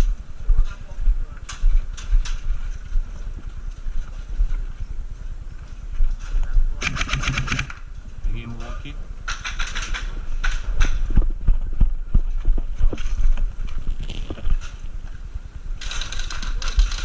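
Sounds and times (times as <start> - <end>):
low rumble: 10.0 - 17.0
rustling: 12.3 - 17.0.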